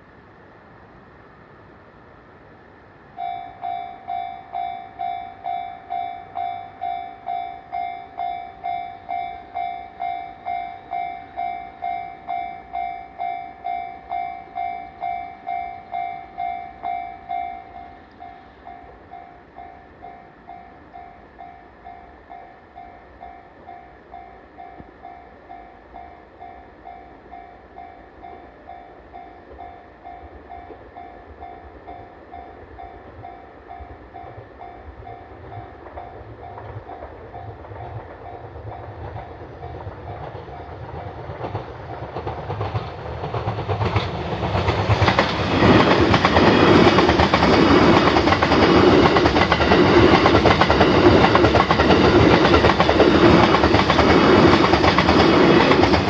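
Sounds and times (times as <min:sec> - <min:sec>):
level crossing warning bell: 0:03.2 - 0:41.6.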